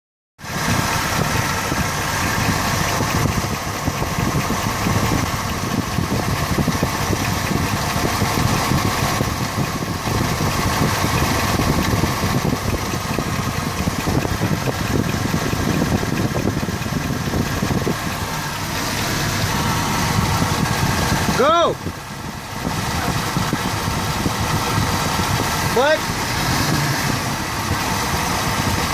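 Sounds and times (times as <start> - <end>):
car engine idling: 0.4 - 28.9
low pulsing belt noise: 0.5 - 28.9.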